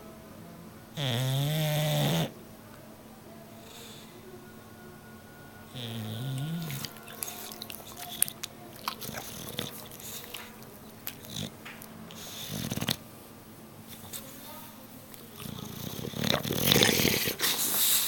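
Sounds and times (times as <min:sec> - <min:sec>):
dog snoring: 0:01.0 - 0:02.3, 0:05.7 - 0:13.0, 0:15.3 - 0:18.0
mouth clicks and smacks: 0:06.7 - 0:12.0.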